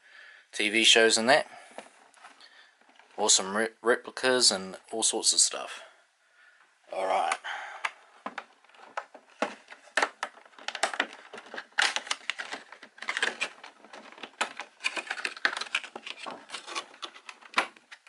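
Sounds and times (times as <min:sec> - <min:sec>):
cardboard box crackling and rustling: 0:08.8 - 0:18.0.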